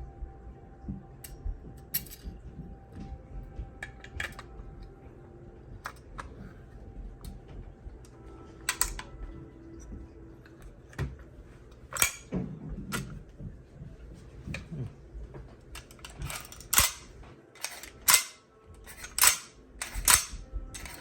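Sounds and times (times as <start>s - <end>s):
clicks of parts being fitted: 8.0s - 9.2s, 11.8s - 13.2s, 15.8s - 21.0s.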